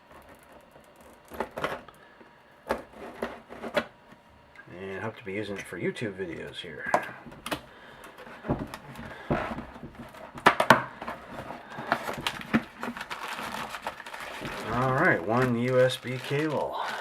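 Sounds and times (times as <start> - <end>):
cardboard packaging rustling: 7.0 - 17.0.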